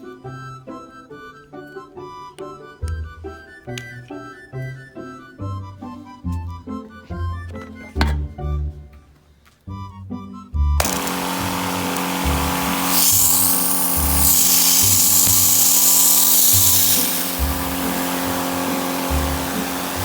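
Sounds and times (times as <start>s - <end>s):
background music with steady beat: 0.0s - 15.3s
motor-driven machine hissing: 10.8s - 20.0s.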